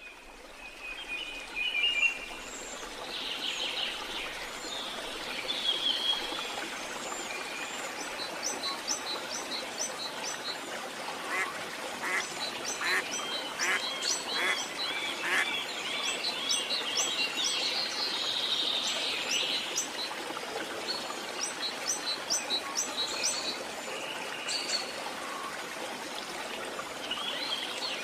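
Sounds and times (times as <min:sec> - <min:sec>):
birds calling and chirping: 0:12.0 - 0:15.5.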